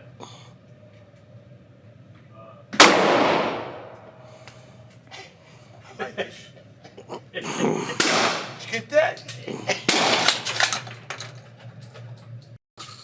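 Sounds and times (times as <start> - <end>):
loud gunshot with echo: 2.8 - 4.1, 8.0 - 8.6.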